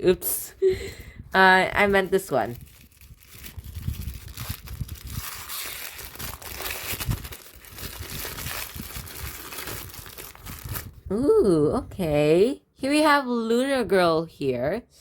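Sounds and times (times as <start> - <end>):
toy packaging crinkling: 2.2 - 11.0.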